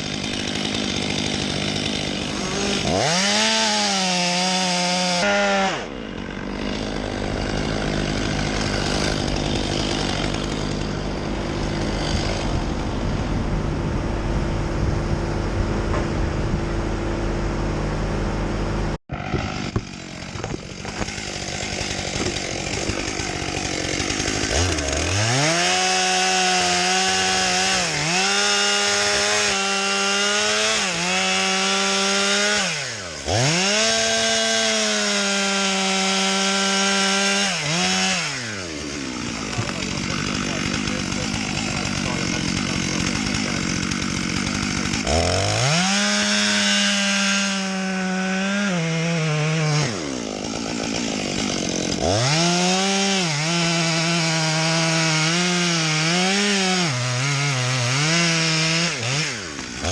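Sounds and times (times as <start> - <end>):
chainsaw cutting wood: 0.0 - 59.9
low hum of heavy machinery: 7.2 - 21.2.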